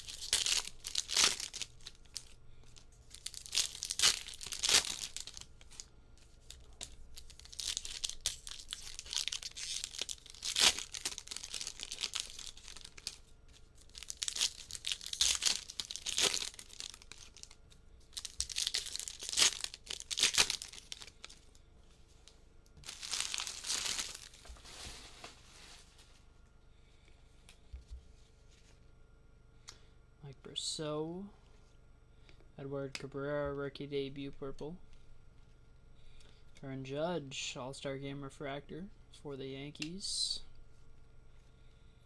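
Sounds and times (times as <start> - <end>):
foil wrapper ripping: 0.0 - 21.6, 22.8 - 26.2
foil wrappers crinkling: 0.0 - 26.3.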